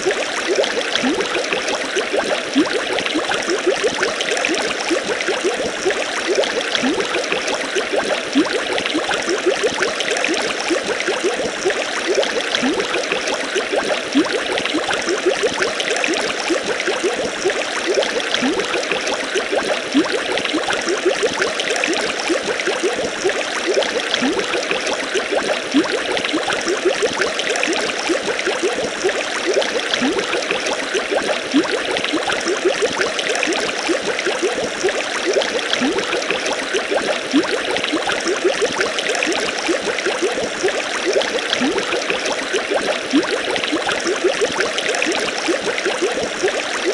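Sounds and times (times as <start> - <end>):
drops plinking into water: 17.9 - 46.9.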